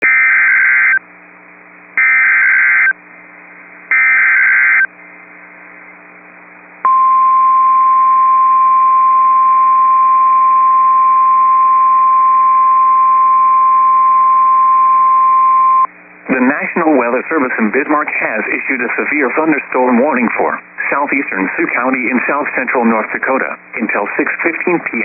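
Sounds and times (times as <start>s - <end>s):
steady warning alarm tone: 2.0s - 3.0s, 3.9s - 4.9s
faint radio hiss: 15.9s - 25.0s.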